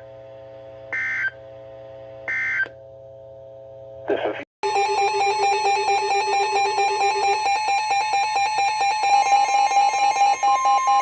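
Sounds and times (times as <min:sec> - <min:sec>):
rapid electronic alarm beeps: 0:04.6 - 0:11.0
steady alarm tone: 0:04.6 - 0:11.0.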